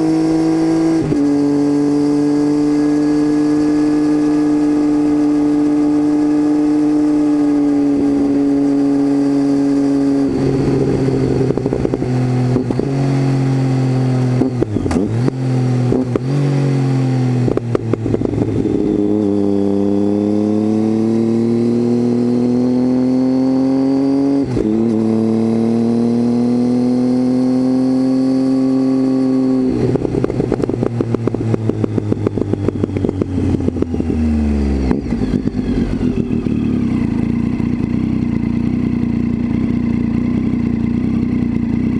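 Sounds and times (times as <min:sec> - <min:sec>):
motorcycle engine revving: 0:00.0 - 0:41.9
exhaust crackling and popping: 0:17.4 - 0:18.7, 0:29.8 - 0:34.2.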